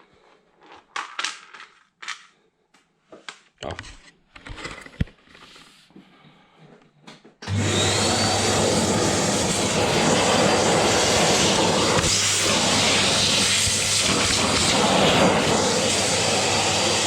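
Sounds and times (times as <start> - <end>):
vacuum cleaner running: 7.4 - 17.0.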